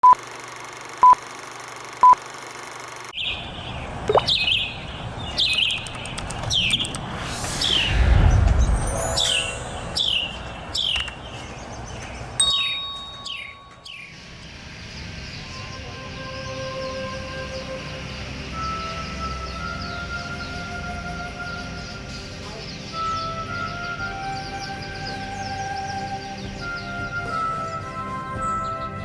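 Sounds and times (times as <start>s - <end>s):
bird chirping: 3.2s - 15.8s
low rush of noise: 6.0s - 11.8s.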